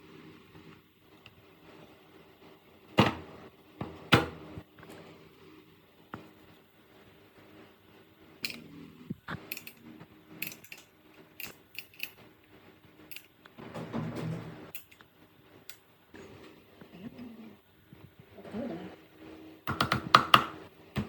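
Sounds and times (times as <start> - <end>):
small parts and tools clinking: 8.4 - 8.7, 9.4 - 12.3, 13.0 - 13.4, 14.7 - 15.0.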